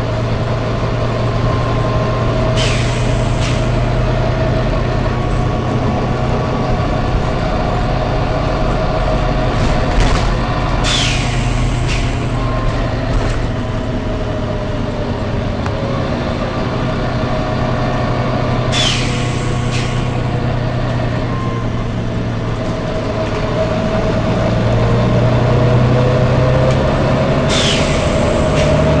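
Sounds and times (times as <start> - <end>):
bus diesel engine humming: 0.0 - 29.0
air brake hisses: 2.5 - 3.9, 10.8 - 12.4, 18.7 - 20.2, 27.4 - 28.8.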